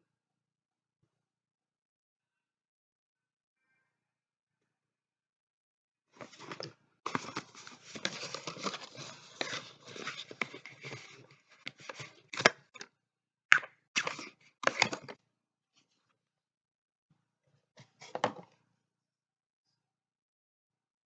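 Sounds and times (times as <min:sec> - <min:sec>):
packaging rustling and tearing: 0:06.2 - 0:12.8.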